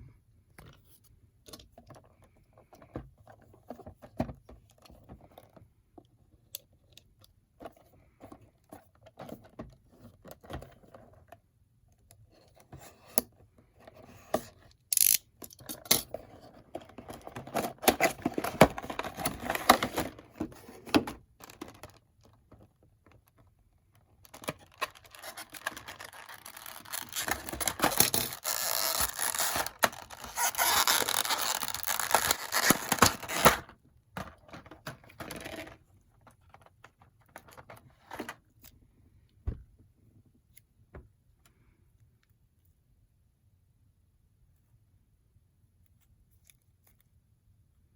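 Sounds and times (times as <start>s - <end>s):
plastic packaging rustling: 17.0s - 38.4s.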